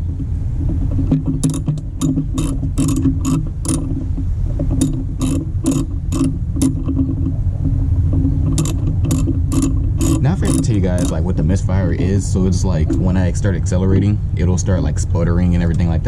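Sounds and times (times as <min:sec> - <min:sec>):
steady low hum: 0:00.0 - 0:16.0
socket ratchet clicking: 0:01.1 - 0:07.3, 0:08.4 - 0:11.2.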